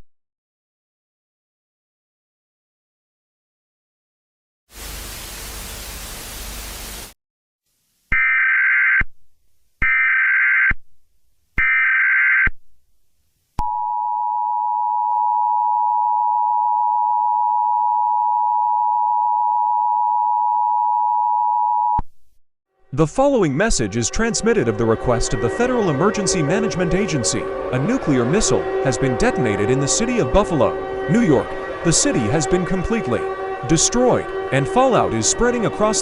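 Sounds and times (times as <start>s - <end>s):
hissing static: 4.7s - 7.2s
loud two-tone alarm: 8.1s - 9.0s, 9.8s - 10.8s, 11.6s - 12.5s.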